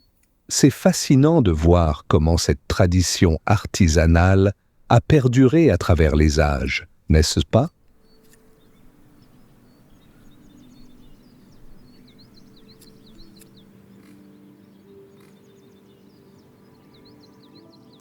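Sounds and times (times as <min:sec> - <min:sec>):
small birds chirping: 0:00.0 - 0:00.3, 0:04.2 - 0:18.0
faint soft music: 0:00.5 - 0:18.0.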